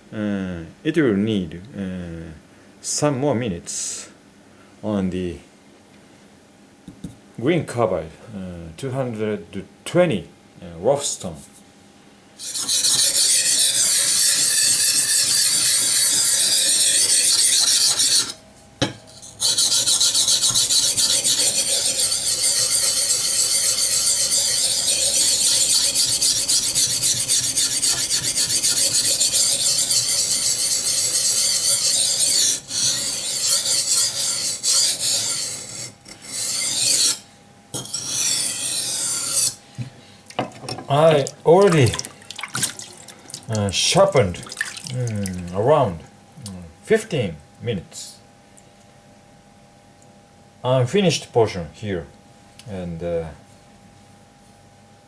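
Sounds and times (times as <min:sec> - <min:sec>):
knife scraping on whetstone: 0:12.4 - 0:39.6.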